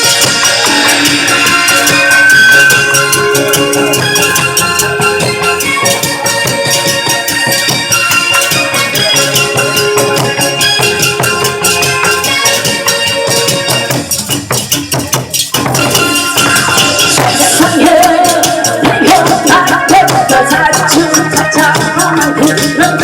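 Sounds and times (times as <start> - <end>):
fast rattling clacking percussion: 0.0 - 23.0
lively percussion music: 0.0 - 23.0.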